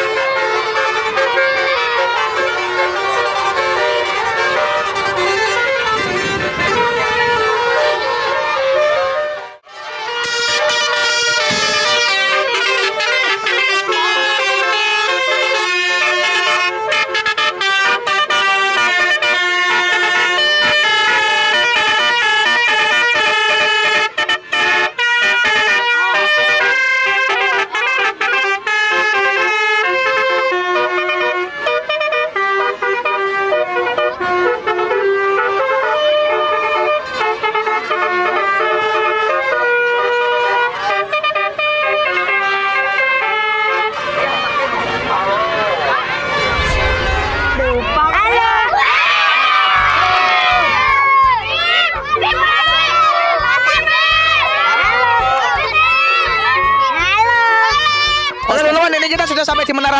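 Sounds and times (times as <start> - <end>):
musical horn playing a tune: 0.0 - 44.5.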